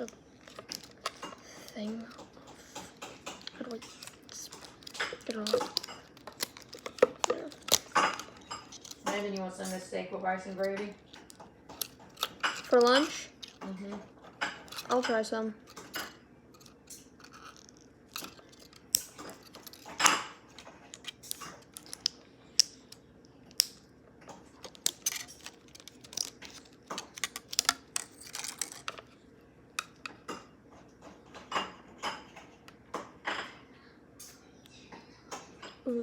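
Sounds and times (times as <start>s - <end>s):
small hard objects clicking: 0.0s - 9.8s, 10.5s - 23.8s, 24.6s - 29.1s.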